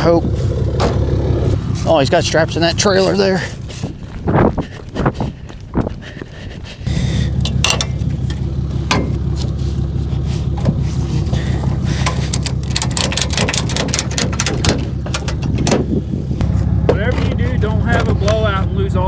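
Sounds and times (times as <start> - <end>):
vehicle engine and road rumble: 0.0 - 19.0
sharp clicks and rattles: 6.9 - 18.8.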